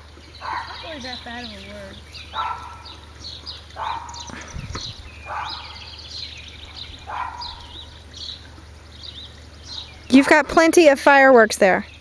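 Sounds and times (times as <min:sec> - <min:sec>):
birds chirping: 0:00.0 - 0:12.0
dog barking: 0:00.4 - 0:00.9, 0:02.3 - 0:03.0, 0:03.8 - 0:04.3, 0:05.3 - 0:05.9, 0:07.0 - 0:07.8.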